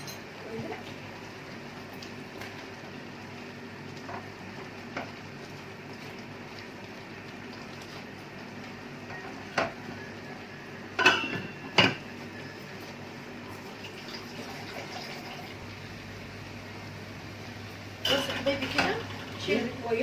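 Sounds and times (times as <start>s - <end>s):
low background hum: 0.0s - 20.0s
metal cookware clanking on pot: 11.0s - 12.0s.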